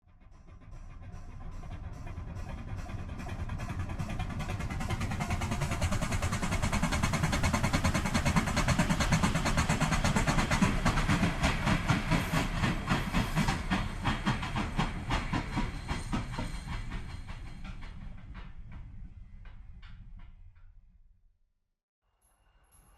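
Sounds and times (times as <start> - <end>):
steam train clattering past: 0.2 - 20.4
steam hiss: 4.8 - 17.9.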